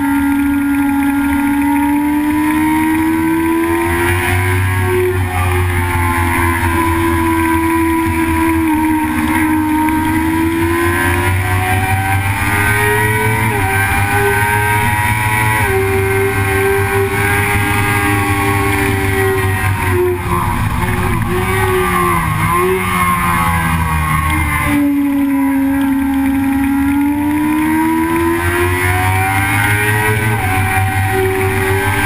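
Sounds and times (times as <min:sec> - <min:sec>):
engine at speed: 0:00.0 - 0:32.0.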